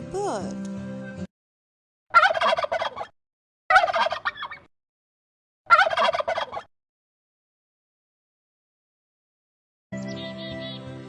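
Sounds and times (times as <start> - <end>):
turkey gobbling: 2.1 - 3.1, 3.7 - 4.7, 5.7 - 6.7.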